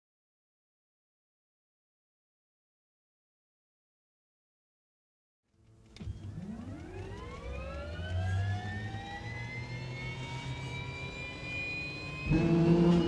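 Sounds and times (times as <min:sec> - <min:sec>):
jet turbine whine: 0:05.7 - 0:13.0
low-pitched hum: 0:05.7 - 0:13.0.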